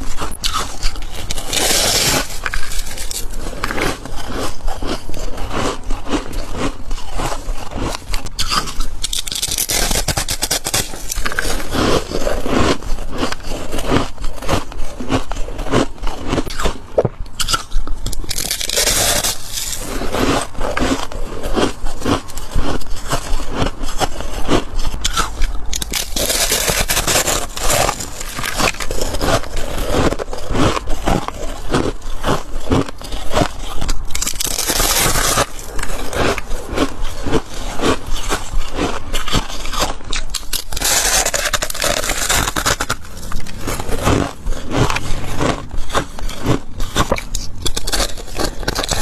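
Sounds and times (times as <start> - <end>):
frost being scraped: 0.0 - 4.3, 25.8 - 30.0, 40.3 - 49.0
frost crunched and chewed: 0.0 - 49.0.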